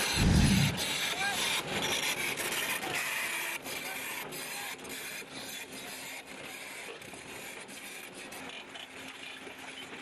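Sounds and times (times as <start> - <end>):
excavator scraping rock: 0.0 - 0.9
faint hum: 0.0 - 0.9.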